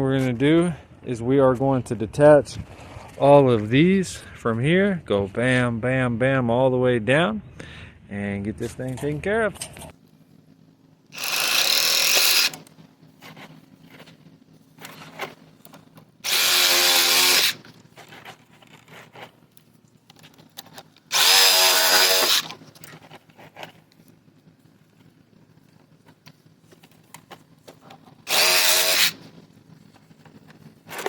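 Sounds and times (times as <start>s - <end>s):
power drill spinning: 11.2s - 14.0s, 16.2s - 19.1s, 21.1s - 23.0s, 28.2s - 29.4s.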